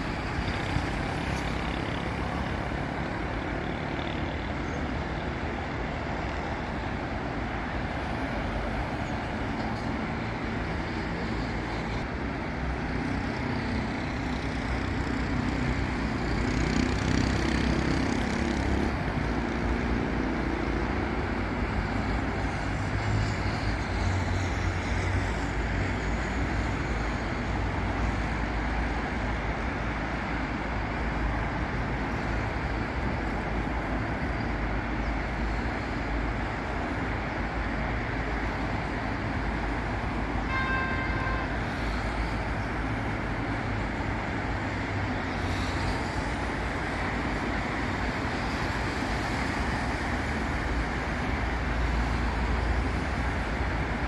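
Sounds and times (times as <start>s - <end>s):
road traffic rumble: 0.0s - 54.0s
vehicle horn: 40.5s - 41.6s.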